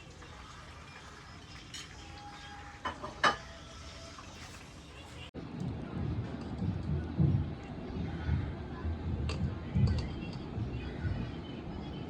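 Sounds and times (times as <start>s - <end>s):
utensil clinking against pot: 2.8s - 3.5s.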